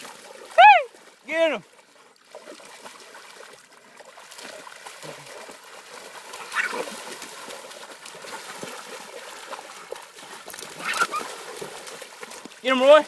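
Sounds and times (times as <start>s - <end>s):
animals splashing in water: 0.0s - 13.0s
animal cry: 6.5s - 6.8s, 10.8s - 11.3s.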